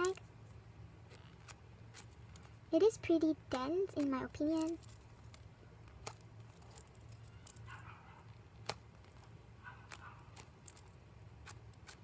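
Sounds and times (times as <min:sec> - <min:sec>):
low steady hum: 0:00.0 - 0:12.0
foam toy rustling: 0:03.5 - 0:07.8.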